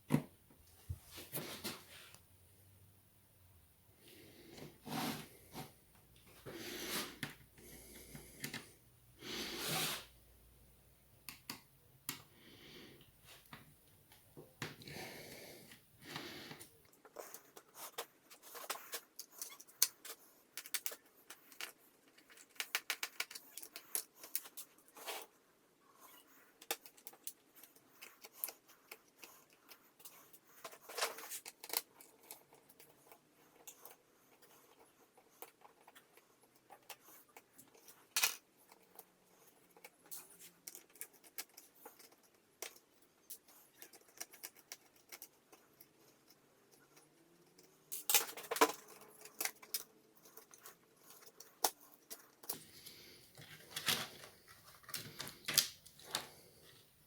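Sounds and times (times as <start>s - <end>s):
small clicks and ticks: 26.6s - 52.6s.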